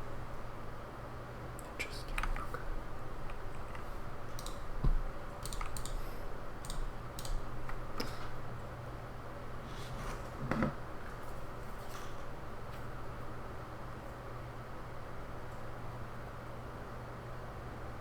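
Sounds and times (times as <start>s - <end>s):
keyboard and mouse clicking: 3.3s - 4.6s, 5.4s - 6.0s, 6.6s - 7.8s.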